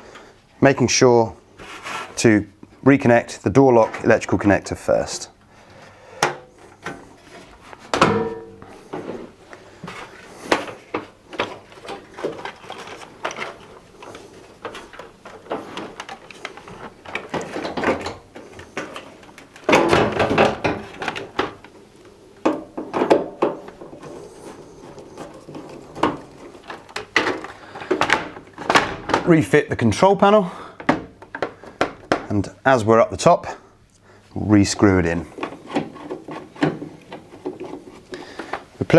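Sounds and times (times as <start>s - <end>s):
panel knocks and clicks: 7.9s - 8.8s.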